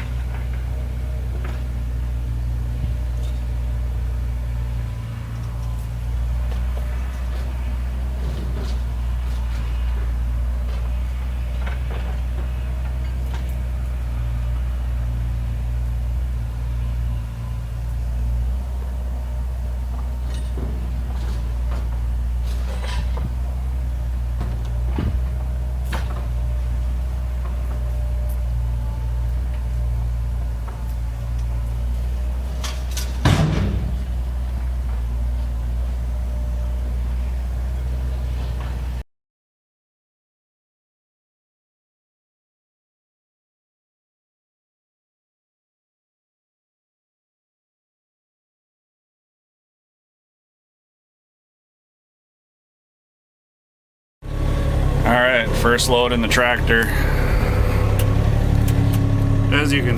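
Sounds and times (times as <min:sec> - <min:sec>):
excavator diesel engine running: 0:00.0 - 0:39.0, 0:54.2 - 0:59.9.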